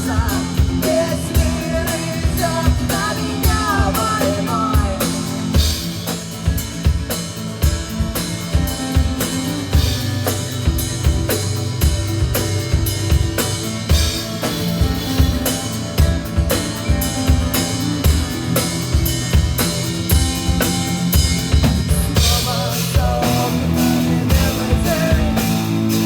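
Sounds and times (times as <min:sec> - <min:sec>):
bass guitar: 0:00.0 - 0:26.0
drum kit beat: 0:00.0 - 0:26.0
guitar melodic line: 0:06.6 - 0:26.0.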